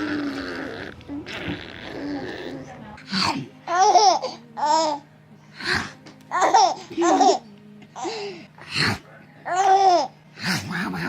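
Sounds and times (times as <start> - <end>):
baby laughing: 6.3 - 7.5.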